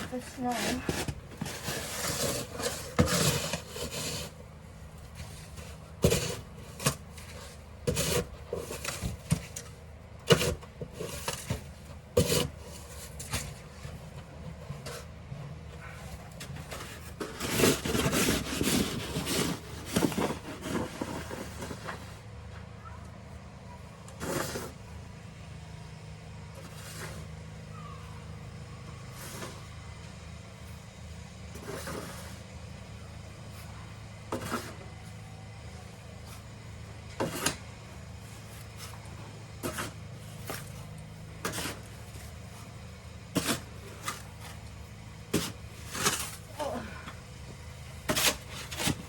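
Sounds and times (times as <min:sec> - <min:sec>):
snow shovel scraping snow: 0:00.0 - 0:04.4, 0:05.1 - 0:09.5, 0:12.2 - 0:13.6, 0:16.6 - 0:22.2, 0:24.2 - 0:24.8, 0:26.6 - 0:27.3, 0:29.1 - 0:29.7, 0:31.5 - 0:32.4, 0:33.5 - 0:34.9, 0:37.2 - 0:37.6, 0:39.6 - 0:44.6, 0:45.3 - 0:46.8, 0:48.0 - 0:49.0.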